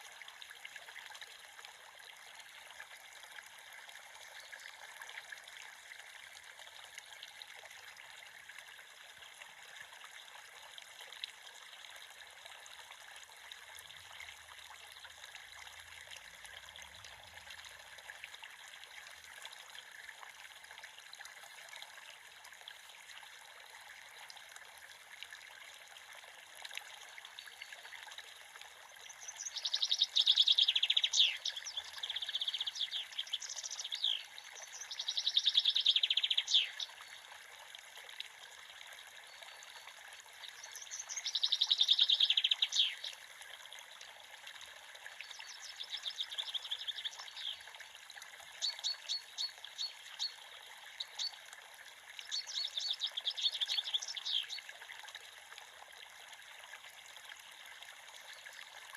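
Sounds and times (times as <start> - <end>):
creek water running: 0.0 - 58.9
songbird trilling: 29.4 - 36.9, 40.6 - 43.1.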